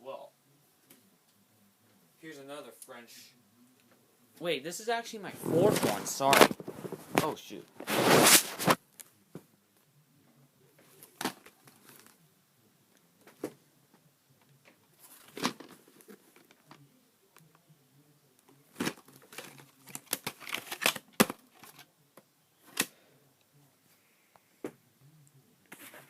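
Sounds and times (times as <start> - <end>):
plastic tape cases clicking: 18.9 - 21.9.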